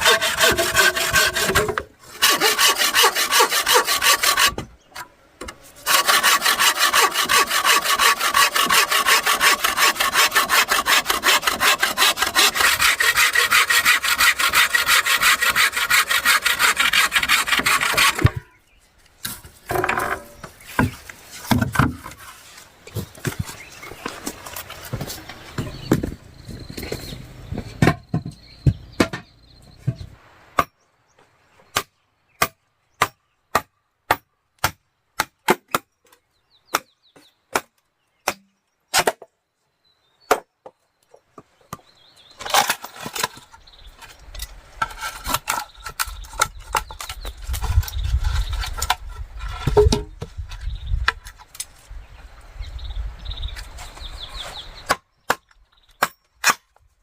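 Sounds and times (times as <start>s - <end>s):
knocking and rustling: 19.2s - 30.2s.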